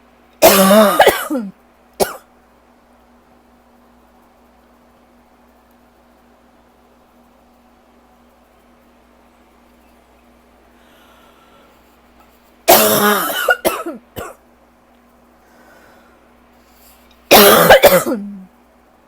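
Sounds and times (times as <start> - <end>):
person coughing: 0.4 - 2.3, 12.7 - 14.4, 17.3 - 18.5.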